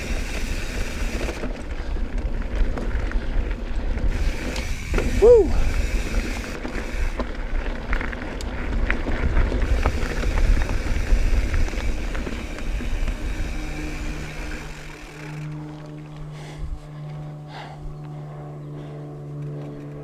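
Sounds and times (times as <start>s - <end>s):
bike clicks and rattles: 0.0s - 20.0s
bike tyres rolling on dirt trail: 0.0s - 20.0s
steady low hum: 9.5s - 20.0s.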